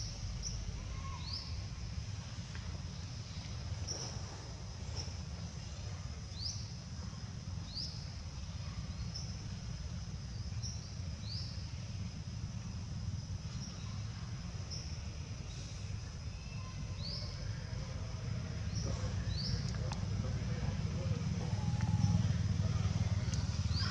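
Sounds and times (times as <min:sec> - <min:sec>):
low wind rumble: 0:00.0 - 0:23.9
birds chirping: 0:13.5 - 0:23.9.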